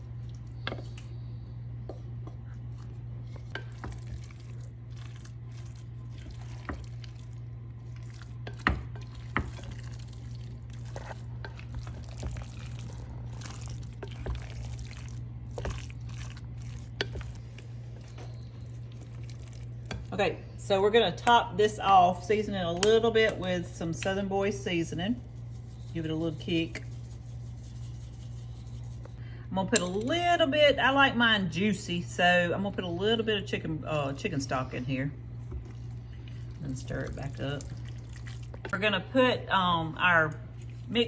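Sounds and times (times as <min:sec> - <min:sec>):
spoon stirring thick filling: 0:00.0 - 0:20.1, 0:22.8 - 0:29.2, 0:33.8 - 0:38.7
steady low hum: 0:00.0 - 0:41.0.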